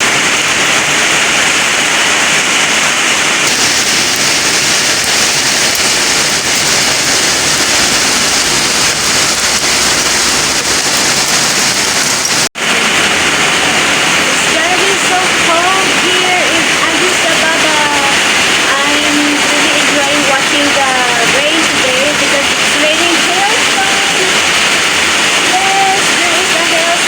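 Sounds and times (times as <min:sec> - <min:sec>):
heavy rain and hail hissing: 0:00.0 - 0:27.0
hailstone ticks: 0:03.5 - 0:12.5.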